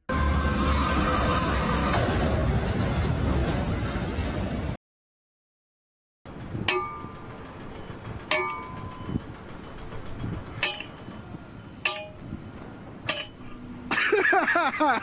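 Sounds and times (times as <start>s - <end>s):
metal striking metal clangs: 6.4s - 13.9s.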